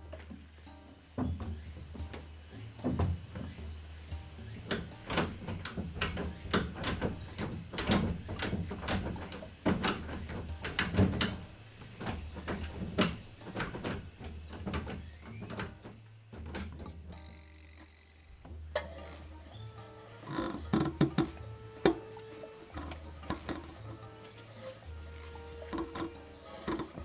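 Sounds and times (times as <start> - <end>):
knocks and clatter: 0.0 - 17.2
insects chirring: 0.0 - 18.4, 19.1 - 27.0.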